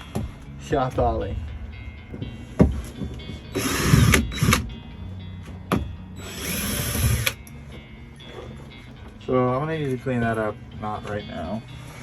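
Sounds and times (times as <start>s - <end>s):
power drill driving screws: 3.5s - 4.7s, 6.2s - 7.4s.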